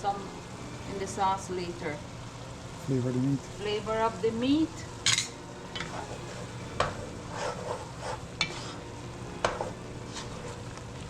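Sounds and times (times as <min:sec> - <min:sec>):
meat sizzling in a pot: 0:00.0 - 0:11.0
utensil scraping a pot: 0:05.1 - 0:10.8.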